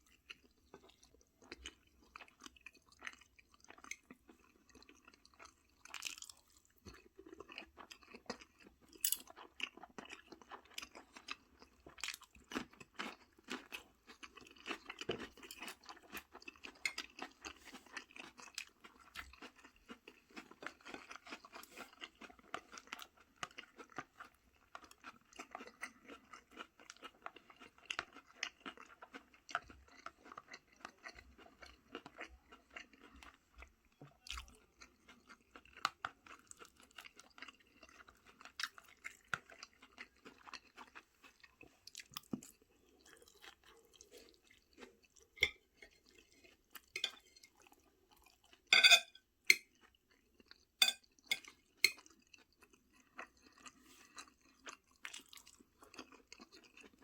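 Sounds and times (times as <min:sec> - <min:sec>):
person chewing food: 0:00.0 - 0:57.0.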